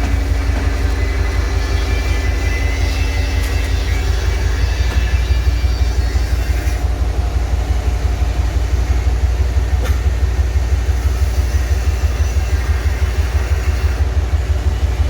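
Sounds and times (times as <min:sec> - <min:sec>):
truck diesel engine running: 0:00.0 - 0:15.0.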